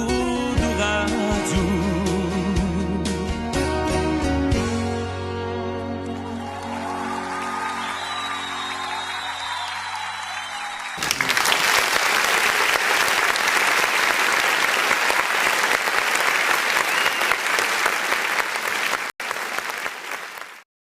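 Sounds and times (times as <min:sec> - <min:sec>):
audience applauding: 0:06.0 - 0:20.7.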